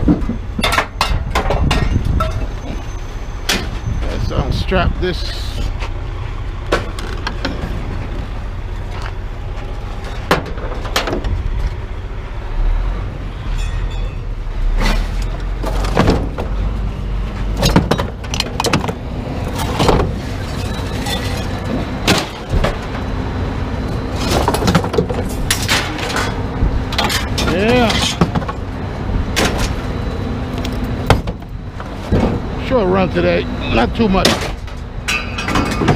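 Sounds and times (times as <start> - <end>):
engine rumbling: 0.0 - 35.9
scrap metal clanking: 24.1 - 28.6, 33.7 - 35.9.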